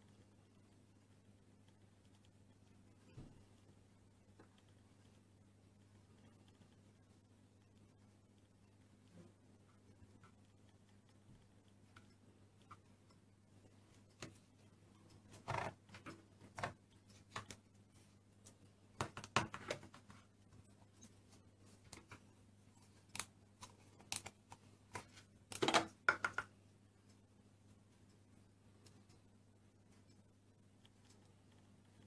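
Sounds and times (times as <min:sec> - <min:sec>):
faint steady hum: 0:00.0 - 0:32.0
plastic moulds tapping and clicking: 0:19.0 - 0:20.1, 0:24.0 - 0:26.6.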